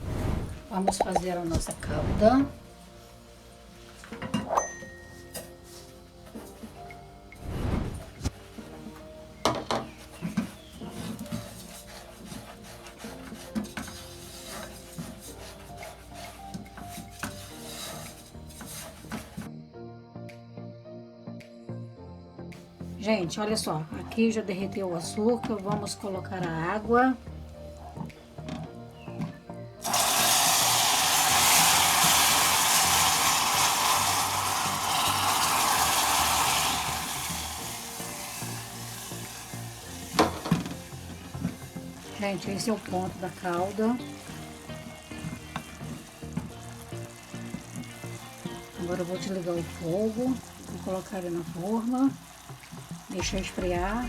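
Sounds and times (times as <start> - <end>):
boiling water and steam hissing: 0.0 - 19.5, 25.0 - 54.0
utensil scraping sugar in a pan: 9.7 - 19.5, 29.8 - 53.2.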